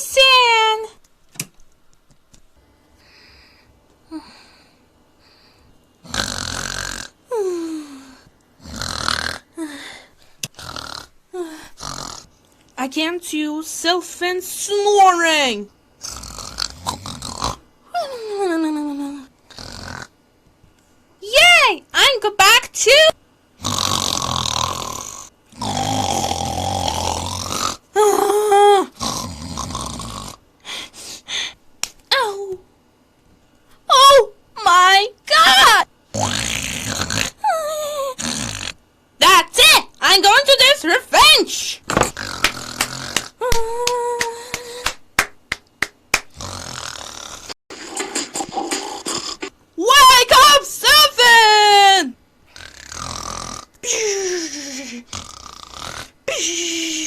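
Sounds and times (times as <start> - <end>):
soft breaths: 2.5 - 5.8, 7.3 - 8.8, 9.4 - 10.6
cartoon snoring: 6.0 - 12.3, 16.0 - 17.6, 18.9 - 20.2, 23.6 - 30.4, 36.1 - 38.8, 41.9 - 43.4, 46.3 - 49.5, 52.5 - 57.0.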